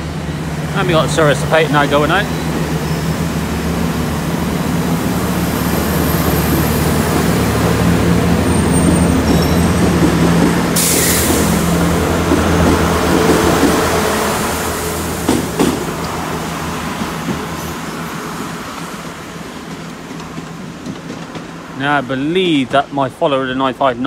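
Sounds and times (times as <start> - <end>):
train engines running: 0.0 - 24.0
sudden hiss: 10.8 - 11.6.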